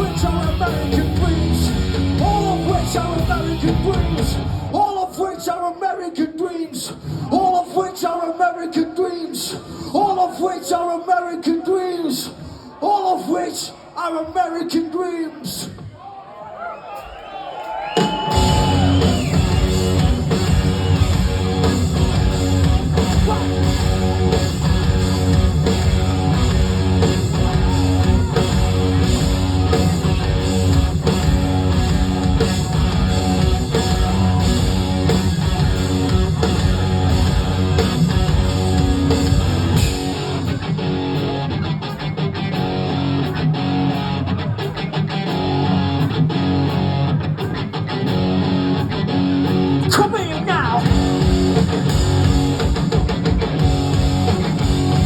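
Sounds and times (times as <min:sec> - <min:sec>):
live rock band playing: 0:00.0 - 0:04.8, 0:18.0 - 0:55.0.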